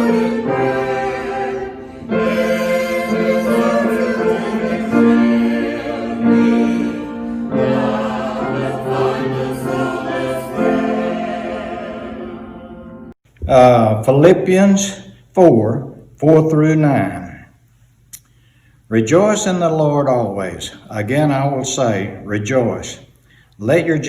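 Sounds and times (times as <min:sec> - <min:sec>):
choir singing sustained chords: 0:00.0 - 0:13.2.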